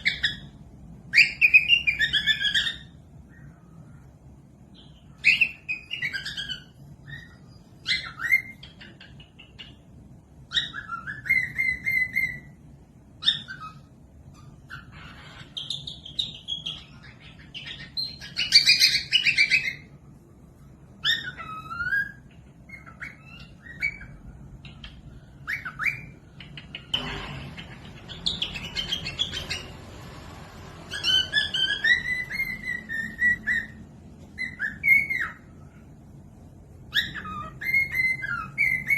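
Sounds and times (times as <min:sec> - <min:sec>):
cockatiel whistling and chirping: 0:00.0 - 0:04.1, 0:04.7 - 0:09.8, 0:10.4 - 0:12.6, 0:13.2 - 0:20.0, 0:20.9 - 0:38.9.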